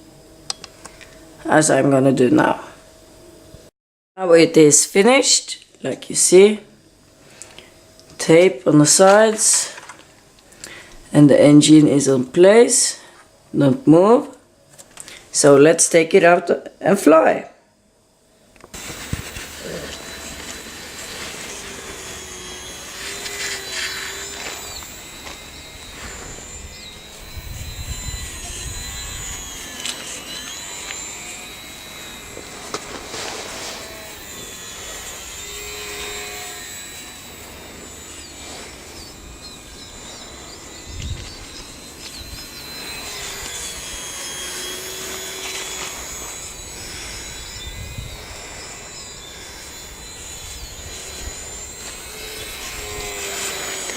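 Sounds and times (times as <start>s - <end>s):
model plane motor whining: 18.1s - 53.9s
wind rumbling on microphone: 26.1s - 29.5s, 46.8s - 48.5s.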